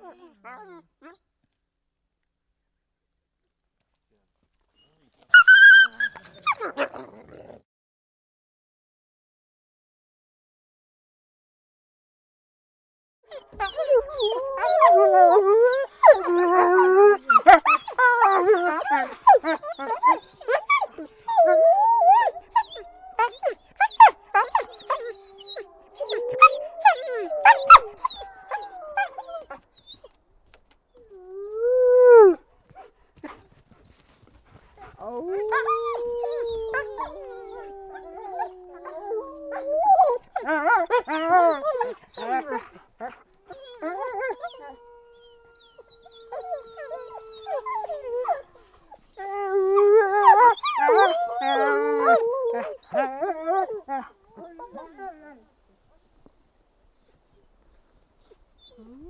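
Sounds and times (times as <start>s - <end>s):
wolves yipping and yelping: 5.3s - 7.1s, 13.3s - 30.2s, 31.0s - 55.3s
wolves howling: 13.3s - 30.2s, 31.0s - 55.5s.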